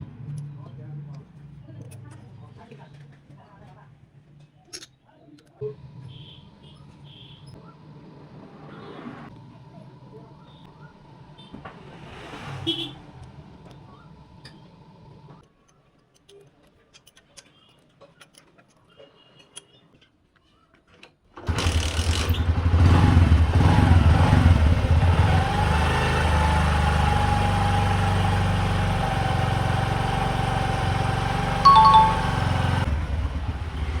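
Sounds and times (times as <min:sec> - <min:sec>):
engine running: 0:21.5 - 0:34.0
short beep: 0:31.7 - 0:32.5.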